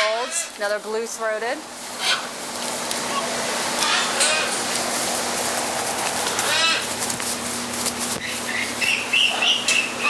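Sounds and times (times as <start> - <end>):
parrots squawking: 0.0 - 0.6, 2.0 - 2.3, 3.1 - 4.7, 6.2 - 7.0, 8.2 - 10.0.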